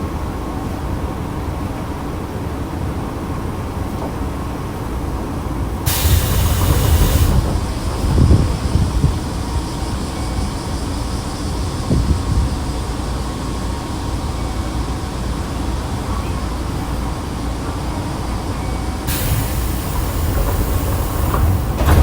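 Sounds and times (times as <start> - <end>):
train hum and rumble: 0.0 - 22.0
compressed air hissing: 5.9 - 9.7, 19.1 - 22.0.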